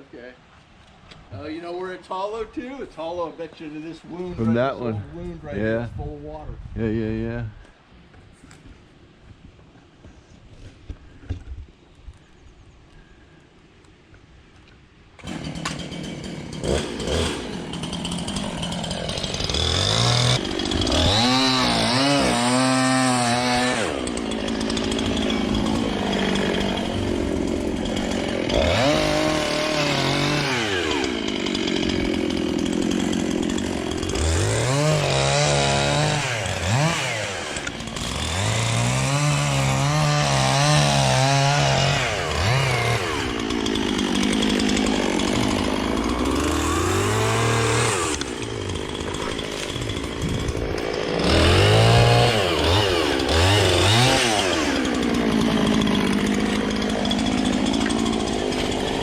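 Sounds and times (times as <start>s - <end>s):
chainsaw revving and cutting wood: 15.2s - 59.0s.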